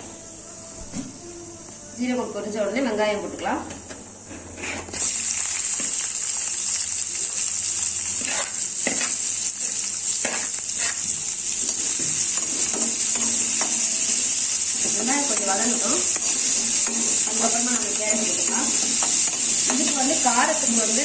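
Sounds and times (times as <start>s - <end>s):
onions frying in hot oil: 4.9s - 21.0s
stirring scrapes against pan: 8.2s - 9.2s, 10.2s - 13.8s.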